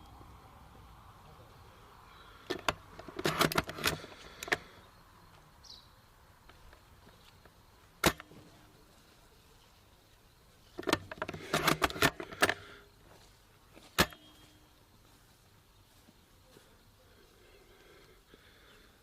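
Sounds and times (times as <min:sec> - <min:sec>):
clicks and rattles: 0:02.5 - 0:04.7, 0:10.8 - 0:12.6.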